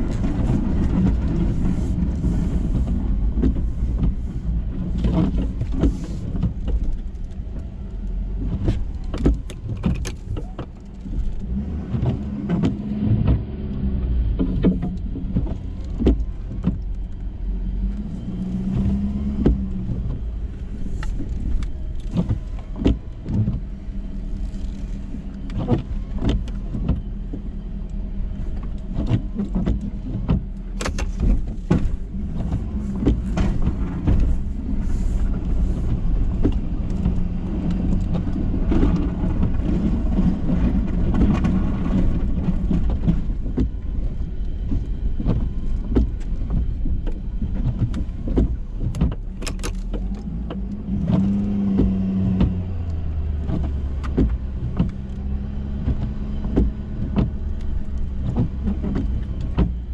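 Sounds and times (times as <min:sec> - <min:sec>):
truck engine hum: 0:00.0 - 0:59.9
knocks and clunks: 0:08.4 - 0:17.2, 0:28.5 - 0:59.9.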